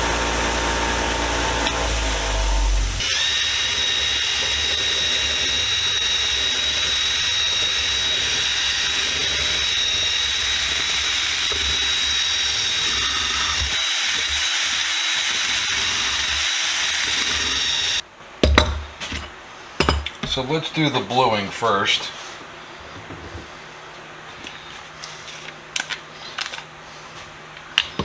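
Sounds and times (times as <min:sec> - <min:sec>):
wire wheel grinding steel: 0:00.0 - 0:18.0.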